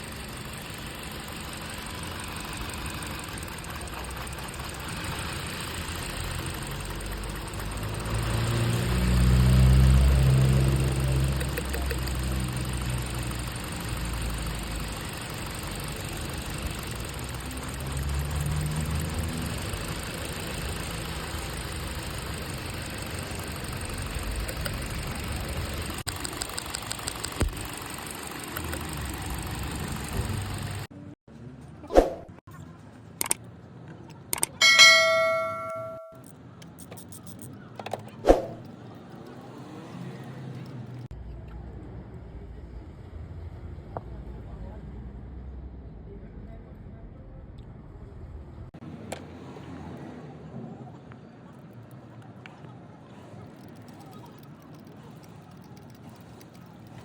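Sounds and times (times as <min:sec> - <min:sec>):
misfiring car engine: 0:00.0 - 0:30.9.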